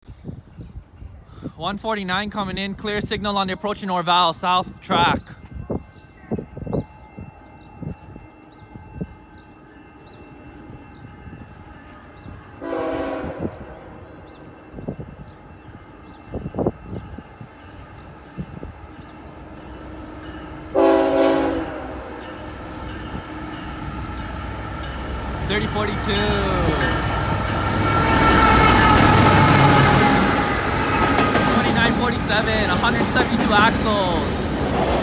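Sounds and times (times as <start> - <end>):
train rumble: 2.4 - 35.0
locomotive air horn blasts: 12.5 - 14.5, 19.6 - 22.6.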